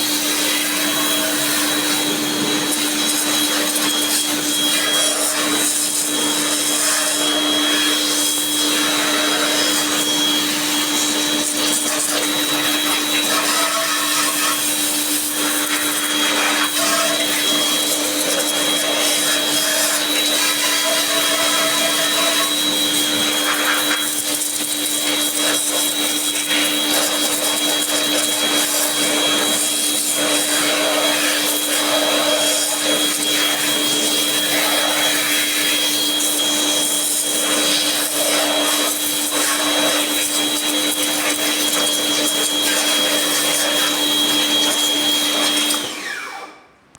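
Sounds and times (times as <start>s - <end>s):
cleaning machine motor whining: 0.0s - 46.7s.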